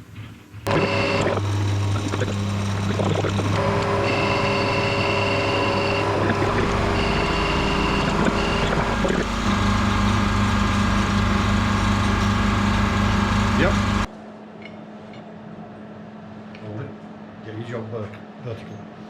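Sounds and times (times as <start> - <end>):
electric motor humming and whining: 0.7 - 14.1.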